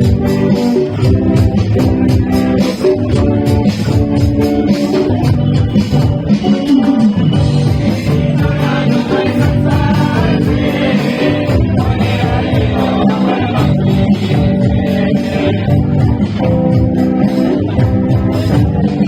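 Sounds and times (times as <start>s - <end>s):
guitar accompaniment: 0.0s - 19.0s
group of singers: 7.4s - 16.3s.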